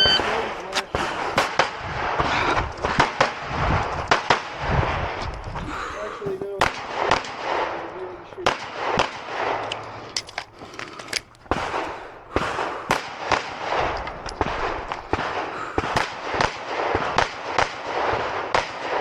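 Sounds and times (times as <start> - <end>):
pistol shots: 6.6 - 9.8, 11.5 - 19.0.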